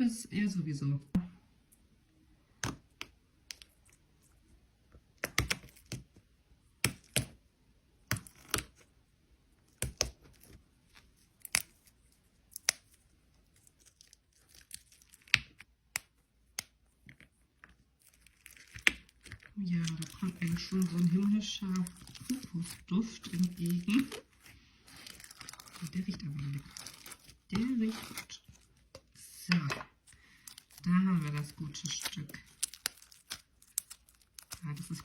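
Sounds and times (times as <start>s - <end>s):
plastic packaging clicks and crinkles: 9.8s - 35.0s.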